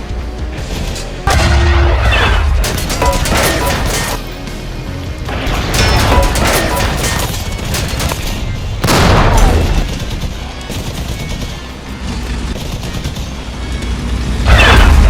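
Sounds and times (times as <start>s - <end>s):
heavy blast with rumble: 1.3s - 4.2s, 5.4s - 10.4s, 14.5s - 15.0s
machine-gun fire: 1.3s - 4.4s, 5.6s - 10.4s.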